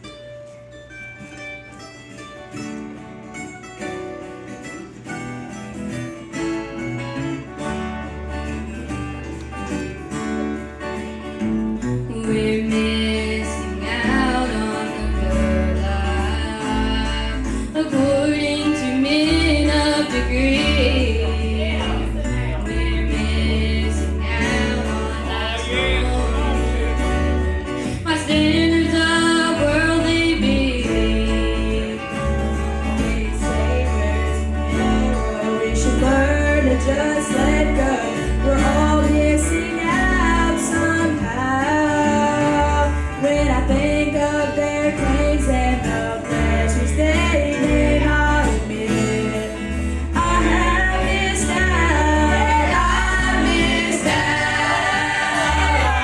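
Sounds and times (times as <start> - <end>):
backing band: 1.0 - 56.0
bass line: 6.4 - 56.0
gospel singing: 12.0 - 56.0.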